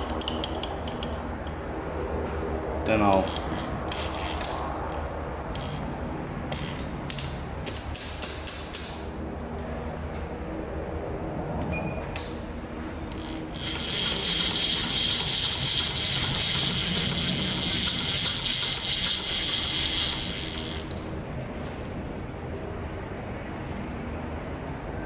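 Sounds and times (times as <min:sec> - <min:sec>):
milling machine whining: 0:13.1 - 0:21.1.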